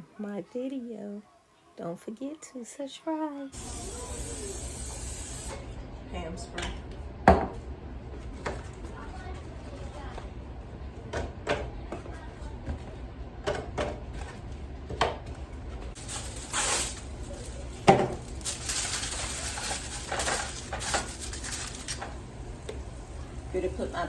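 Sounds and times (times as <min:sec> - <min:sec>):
cooking spray hissing: 0:02.9 - 0:05.8, 0:16.0 - 0:24.0
pans and utensils clattering: 0:16.0 - 0:22.2.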